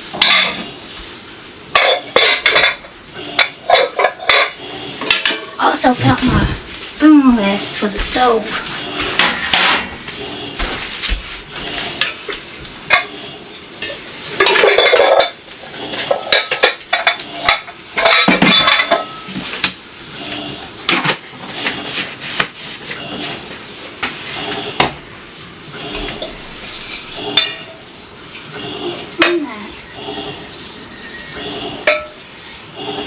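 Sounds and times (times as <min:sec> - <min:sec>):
dishes and cutlery clinking: 0:00.1 - 0:00.7, 0:01.7 - 0:06.5, 0:07.8 - 0:19.8, 0:25.8 - 0:27.8, 0:31.0 - 0:32.2.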